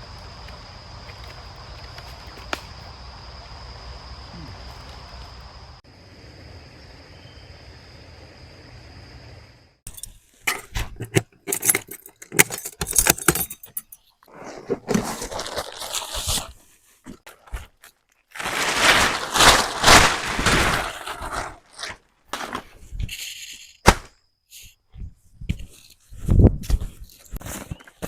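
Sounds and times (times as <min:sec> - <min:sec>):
gear clicking and clinking: 0:11.1 - 0:14.2
rustling: 0:14.2 - 0:23.3.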